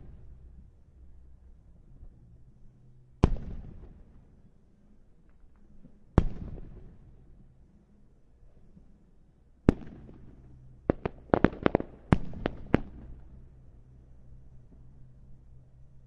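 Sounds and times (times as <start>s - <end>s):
firework bangs echoing: 10.9s - 13.0s
rapid firework cracks: 10.9s - 13.1s.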